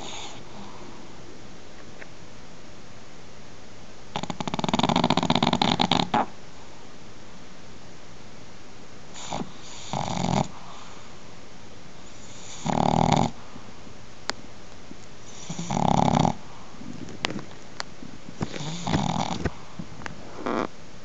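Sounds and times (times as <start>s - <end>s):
rough rattling snoring: 4.2s - 6.3s, 9.2s - 10.7s, 12.2s - 13.4s, 15.3s - 16.4s, 18.4s - 19.6s, 20.4s - 20.7s.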